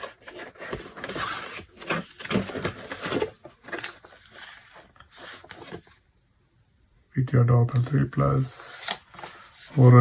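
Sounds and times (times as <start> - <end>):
paper and cardboard rustling: 0.0 - 6.0, 7.7 - 10.0.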